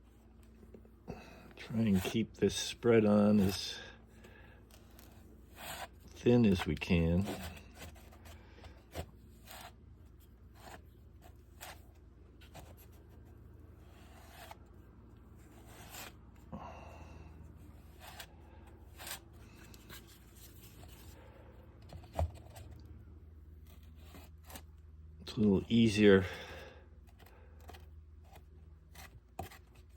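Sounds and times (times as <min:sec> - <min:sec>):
low steady hum: 0:00.0 - 0:29.9.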